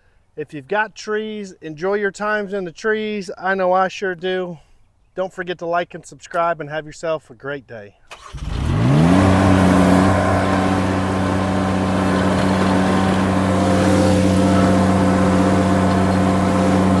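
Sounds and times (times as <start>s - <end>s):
skid steer engine running: 8.4s - 17.0s.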